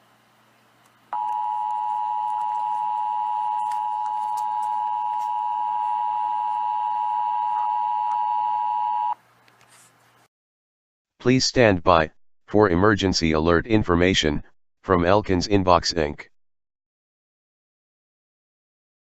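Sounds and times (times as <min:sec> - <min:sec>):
two-tone alarm hum: 0:01.1 - 0:09.2.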